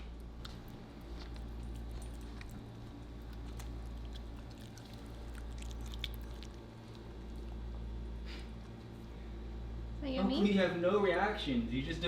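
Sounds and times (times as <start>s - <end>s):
steady low hum: 0.0s - 12.0s
puppy chewing wet smacks: 0.5s - 7.6s.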